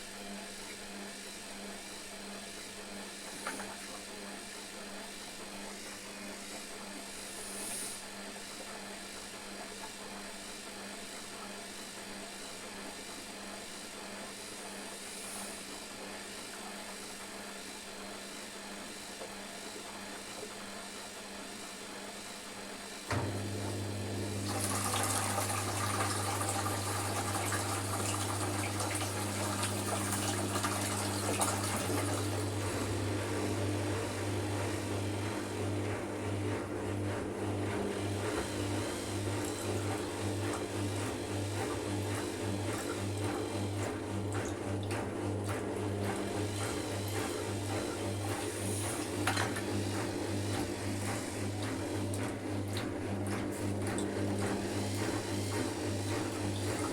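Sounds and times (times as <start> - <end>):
water rushing into washing machine drum: 23.1 - 56.9.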